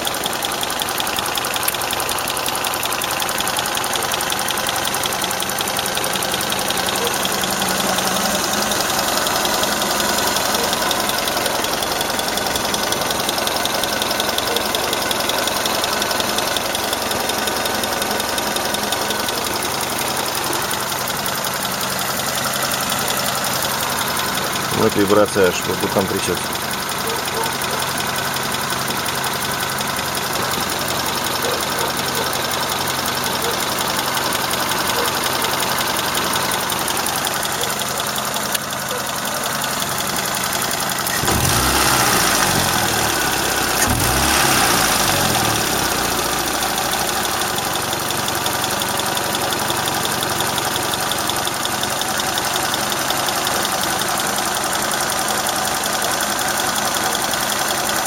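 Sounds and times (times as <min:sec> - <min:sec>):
engine revving: 0:00.0 - 0:21.4, 0:39.8 - 0:55.2
car engine idling: 0:00.0 - 0:58.0
engine tapping: 0:00.0 - 0:58.0.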